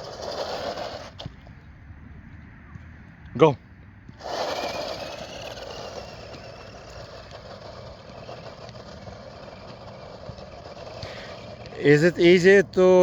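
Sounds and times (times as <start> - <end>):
rc truck motor whirring: 0.0 - 1.6, 4.2 - 13.0.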